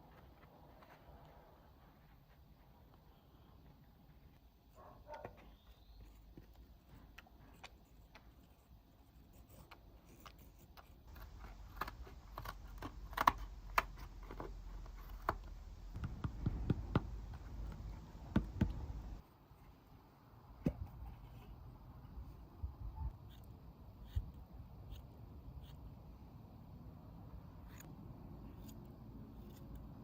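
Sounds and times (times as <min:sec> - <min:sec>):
hand tools clicking and tapping: 0:11.1 - 0:19.2.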